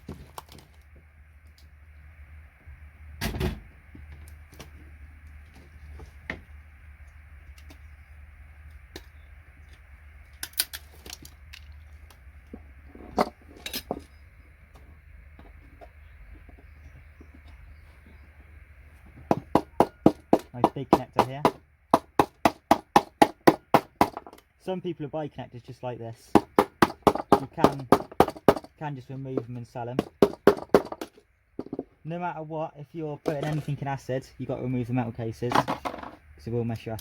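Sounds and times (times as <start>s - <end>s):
steady low hum: 0.0s - 37.0s
metal parts clicking and clinking: 10.4s - 11.8s.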